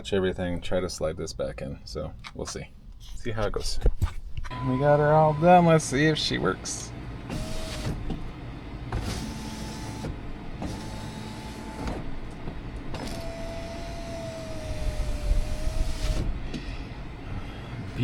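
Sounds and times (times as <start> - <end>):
power window motor whining: 4.4 - 6.2, 7.0 - 17.2
window motor click: 7.3 - 8.2, 8.9 - 16.4.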